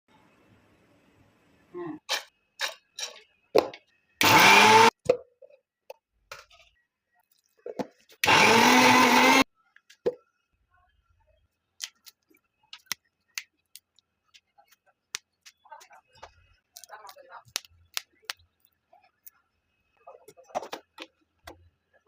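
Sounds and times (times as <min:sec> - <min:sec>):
mixer grinder motor spinning up: 0:04.2 - 0:04.9, 0:08.2 - 0:09.4.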